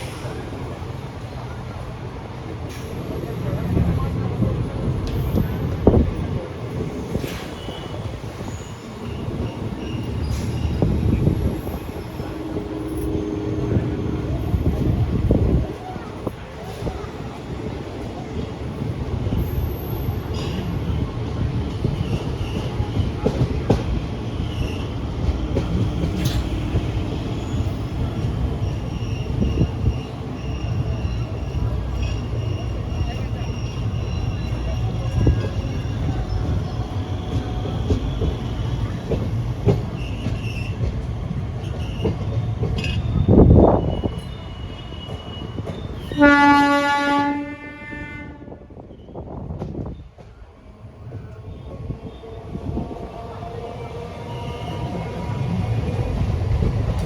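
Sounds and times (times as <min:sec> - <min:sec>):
train wheels rumbling: 0:00.0 - 0:57.0
train horn blast: 0:12.1 - 0:14.6, 0:46.0 - 0:48.8
high wheel squeal: 0:24.3 - 0:39.0.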